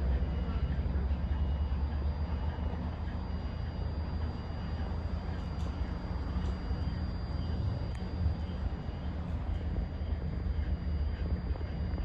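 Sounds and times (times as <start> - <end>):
bus engine and road rumble: 0.0 - 3.2
thin high whine: 0.0 - 12.0.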